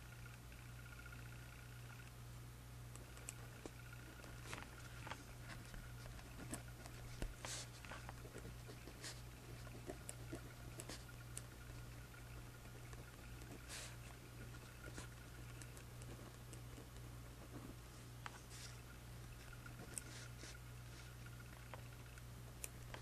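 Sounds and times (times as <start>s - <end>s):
low electrical hum: 0.0s - 23.0s
pen scratching on paper: 3.5s - 21.3s.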